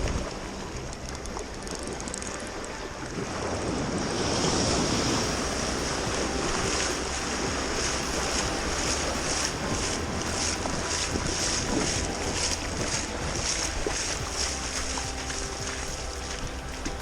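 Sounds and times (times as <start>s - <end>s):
sea waves: 0.0s - 17.0s
wind buffeting microphone: 0.0s - 17.0s.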